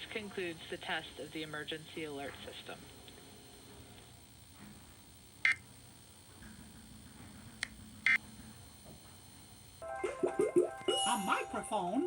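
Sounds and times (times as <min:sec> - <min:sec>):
high electronic chirps: 0:09.8 - 0:12.0.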